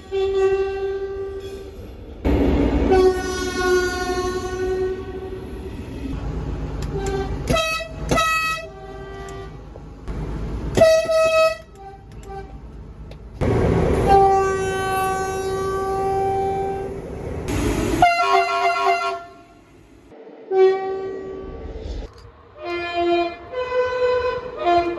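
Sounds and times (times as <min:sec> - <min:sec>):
train horn blasts: 0:00.0 - 0:01.6, 0:02.8 - 0:05.4, 0:06.8 - 0:09.7, 0:10.7 - 0:12.6, 0:13.4 - 0:17.1, 0:17.9 - 0:19.7, 0:20.4 - 0:21.6, 0:22.6 - 0:24.9.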